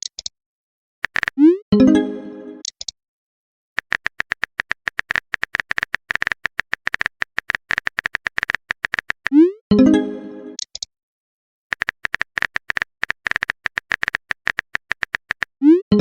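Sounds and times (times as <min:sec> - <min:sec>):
phone keyboard key clicks: 0:01.0 - 0:01.4, 0:03.8 - 0:09.3, 0:10.6 - 0:10.9, 0:11.7 - 0:15.5
message chime: 0:09.7 - 0:10.6.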